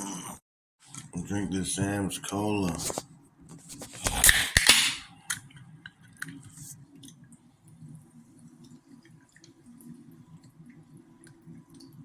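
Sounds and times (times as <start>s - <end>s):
eating and drinking sounds: 2.8s - 12.0s.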